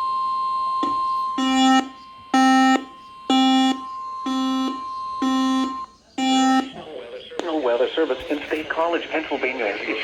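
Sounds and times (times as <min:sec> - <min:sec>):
low buzzy beep: 0:00.0 - 0:06.9.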